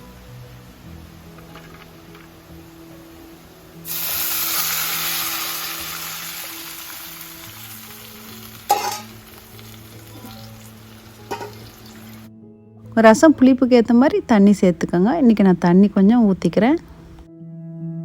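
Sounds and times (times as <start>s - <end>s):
hot oil sizzling: 0.0s - 12.3s
utensil clink: 11.3s - 11.6s.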